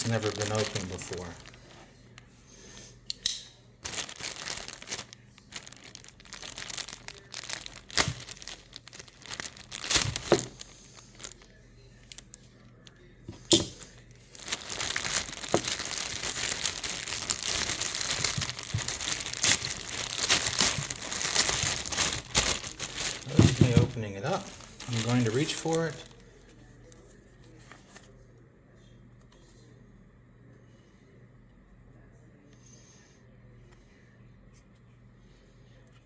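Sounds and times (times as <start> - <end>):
plastic bag rustling and crinkling: 0.0 - 1.9, 3.8 - 28.1.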